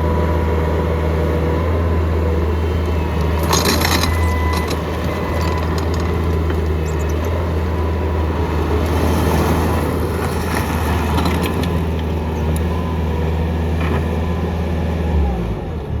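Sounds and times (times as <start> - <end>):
diesel engine droning: 0.0 - 16.0.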